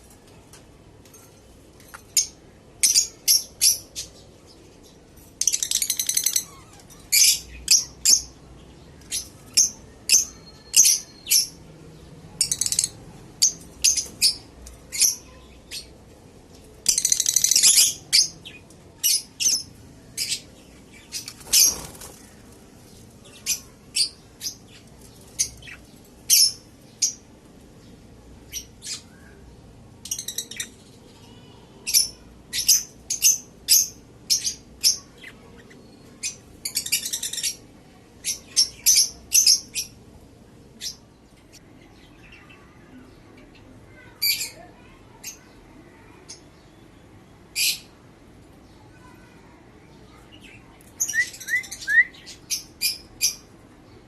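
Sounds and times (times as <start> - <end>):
birds chirping: 0.1 - 54.0
birds rapid chattering: 16.8 - 27.3.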